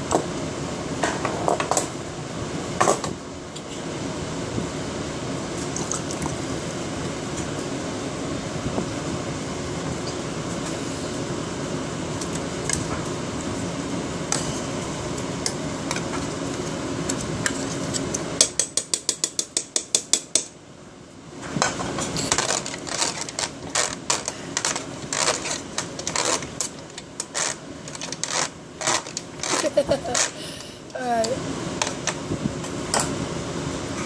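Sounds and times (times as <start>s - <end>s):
food being mixed: 21.7s - 30.4s.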